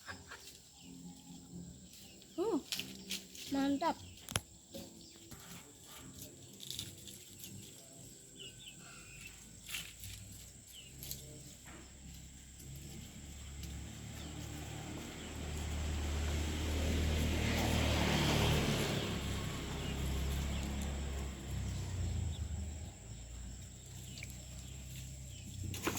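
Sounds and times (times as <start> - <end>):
motor vehicle passing by: 0.7 - 25.9.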